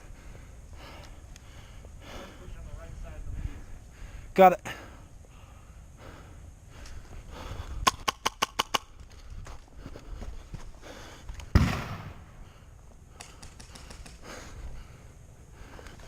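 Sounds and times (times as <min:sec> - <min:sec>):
airsoft gun shots: 0:11.5 - 0:12.4.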